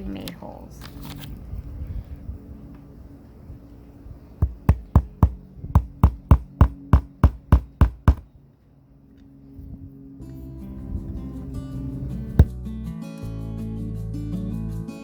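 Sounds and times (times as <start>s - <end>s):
small hammer tapping nail into wood: 4.4s - 8.2s.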